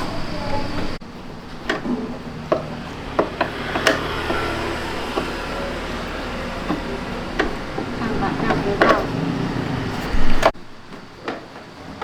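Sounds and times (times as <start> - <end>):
steady low hum: 0.0 - 11.6
hand tools clicking and knocking: 0.8 - 11.7.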